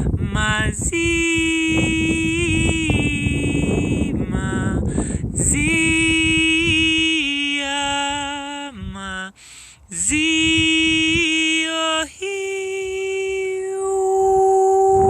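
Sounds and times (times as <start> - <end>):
woman chanting wordless tones: 0.0 - 15.0
woman breathing: 4.8 - 5.4, 9.3 - 10.0.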